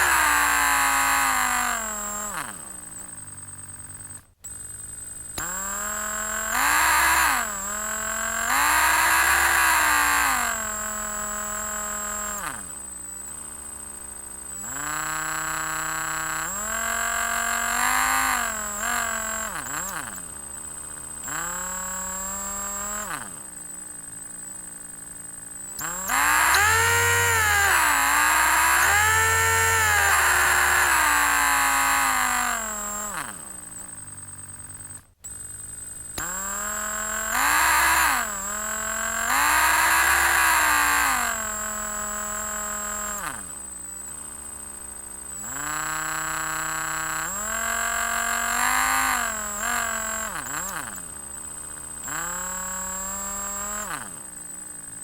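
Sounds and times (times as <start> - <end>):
electric drill motor whining: 0.0 - 55.0.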